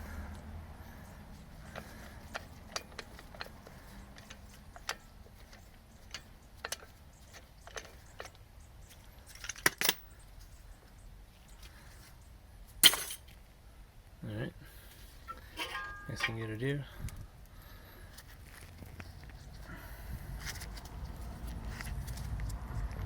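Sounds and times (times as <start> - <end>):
metal tools clinking: 12.8 - 13.3, 15.2 - 16.8.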